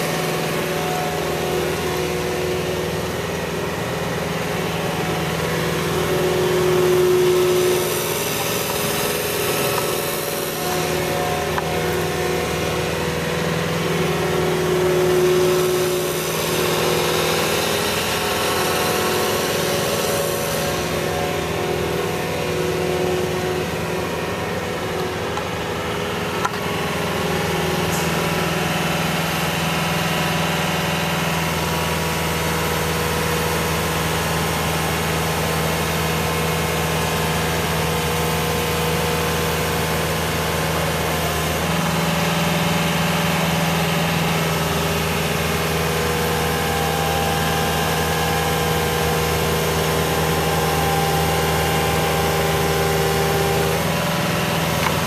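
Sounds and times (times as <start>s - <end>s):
loader engine running: 0.0s - 55.0s.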